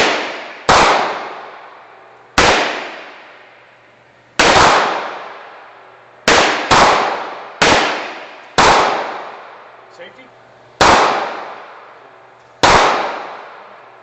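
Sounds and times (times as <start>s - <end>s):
echoing gunshots: 0.0s - 3.8s, 4.4s - 9.9s, 10.8s - 14.0s.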